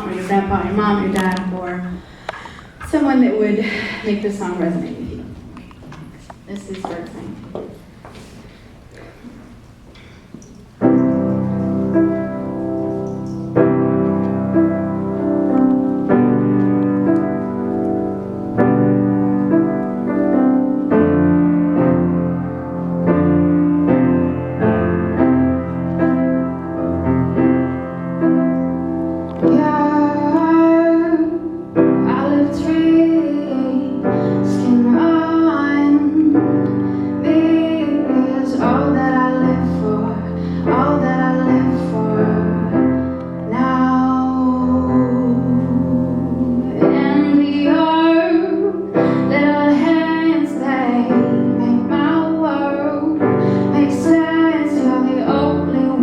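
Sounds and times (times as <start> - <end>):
piano chords: 0.0 - 2.2, 8.6 - 56.0
woman singing: 29.4 - 56.0.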